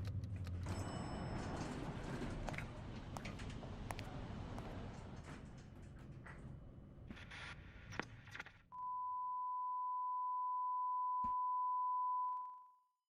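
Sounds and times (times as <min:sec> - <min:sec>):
censor bleep tone: 0:08.8 - 0:12.8.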